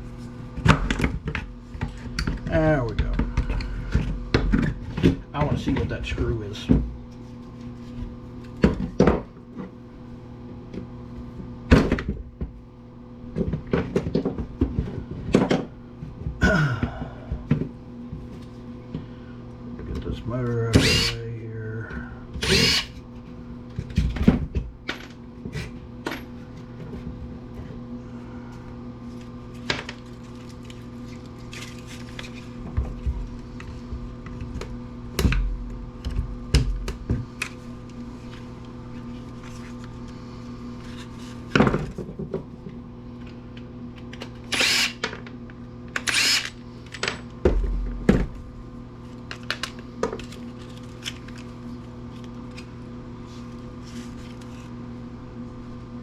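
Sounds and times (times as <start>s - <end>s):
steady hum: 0.0s - 56.0s
power drill whirring: 20.8s - 21.2s, 22.4s - 23.0s, 44.5s - 45.0s, 46.0s - 46.6s.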